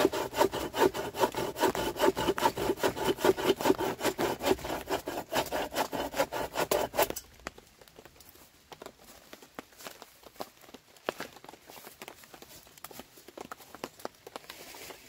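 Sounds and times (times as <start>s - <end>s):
hand saw cutting wood: 0.0s - 7.2s.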